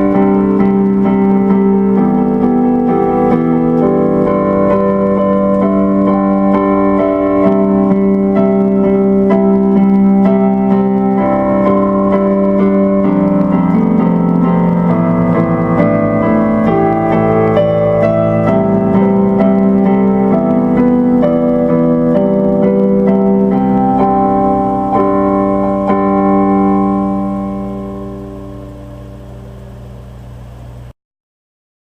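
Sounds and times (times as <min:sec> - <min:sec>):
electric piano music: 0:00.0 - 0:30.9.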